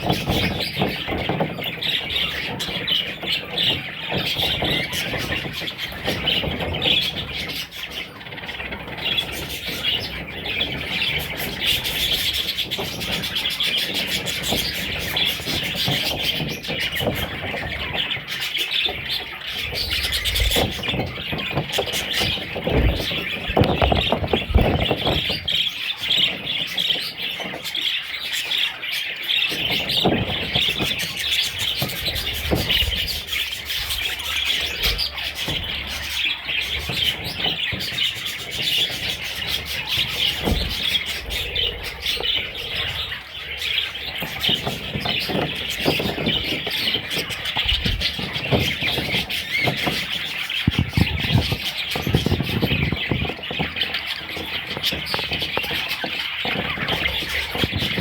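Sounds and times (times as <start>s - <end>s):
budgerigars chirping and chattering: 0.0s - 58.0s
rustling: 0.0s - 58.0s
low thumps: 44.1s - 58.0s.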